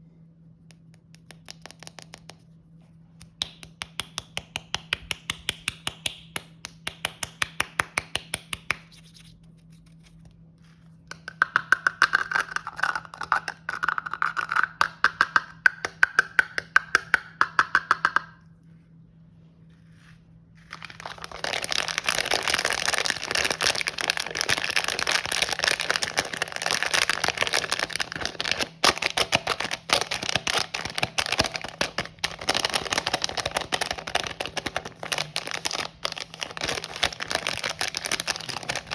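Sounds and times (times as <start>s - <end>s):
snack packaging crinkling: 20.7s - 38.9s.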